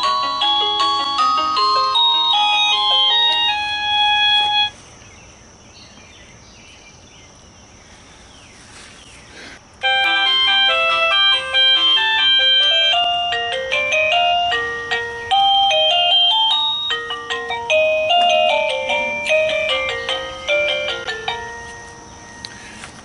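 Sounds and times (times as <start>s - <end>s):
doorbell chime melody: 0.0s - 4.7s, 9.8s - 22.5s.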